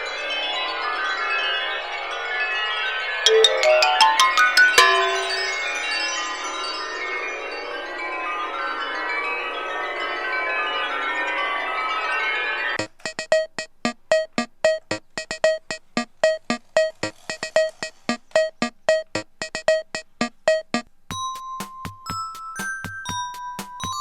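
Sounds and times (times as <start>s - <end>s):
beat of short pitched notes: 3.3s - 5.7s
chime-like keyboard melody: 3.3s - 5.9s.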